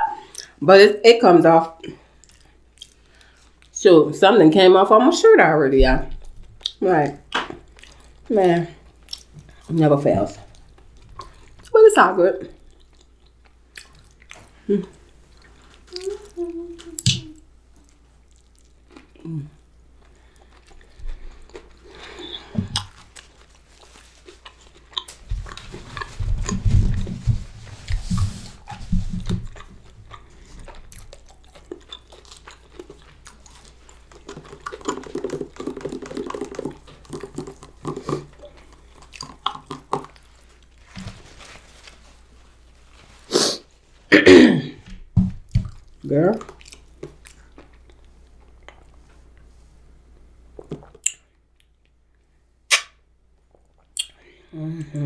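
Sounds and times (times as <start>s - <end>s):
chewing and biting food: 7.5s - 9.7s, 12.6s - 17.1s, 17.7s - 27.0s, 29.2s - 40.8s, 45.6s - 49.0s
wet mouth clicks: 34.3s - 38.5s, 52.7s - 53.0s, 53.8s - 54.2s.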